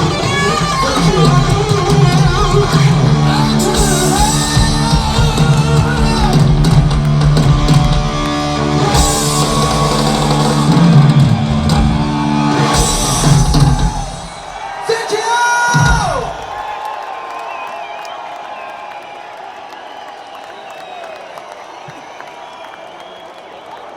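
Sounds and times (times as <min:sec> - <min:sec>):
person singing: 0:00.0 - 0:06.8
bass guitar: 0:00.0 - 0:14.6
distorted electric guitar: 0:00.0 - 0:14.6
drum kit: 0:00.0 - 0:16.7.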